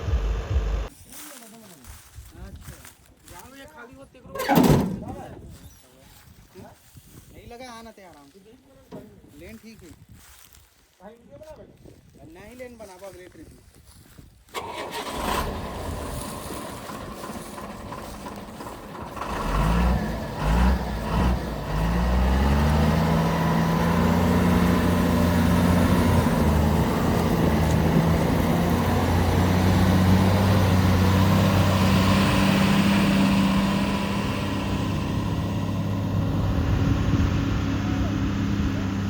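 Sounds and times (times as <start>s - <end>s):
heavy diesel engine revving: 14.6s - 39.0s.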